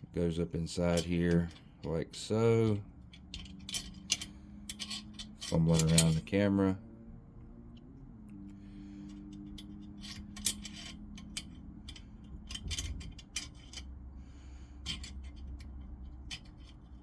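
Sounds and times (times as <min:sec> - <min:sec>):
metal gun parts clicking: 0:00.9 - 0:02.0, 0:03.0 - 0:06.3, 0:09.0 - 0:14.0, 0:14.8 - 0:17.0.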